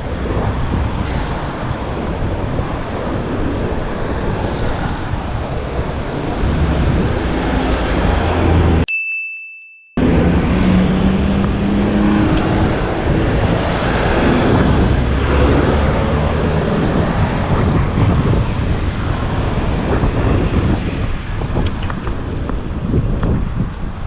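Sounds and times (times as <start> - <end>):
wind buffeting microphone: 0.0 - 8.8, 10.0 - 24.0
street traffic: 0.0 - 24.0
high ringing tone: 6.2 - 7.8, 8.8 - 10.0
passing engine hum: 10.0 - 17.9.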